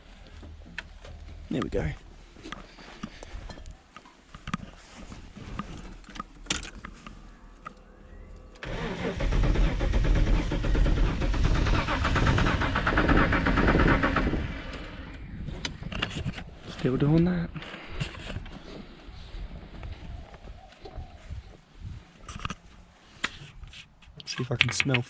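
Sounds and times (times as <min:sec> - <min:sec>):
starter motor cranking engine: 0:08.6 - 0:15.9.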